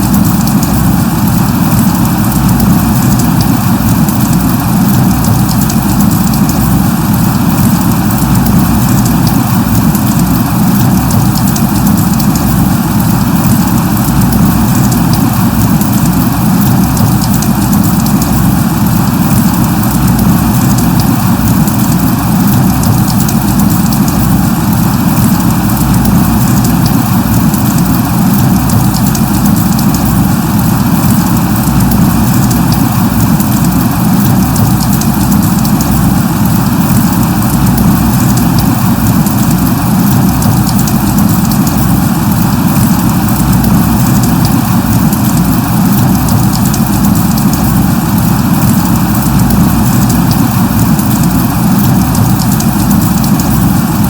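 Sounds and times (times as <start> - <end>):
light rain falling: 0.0 - 54.0.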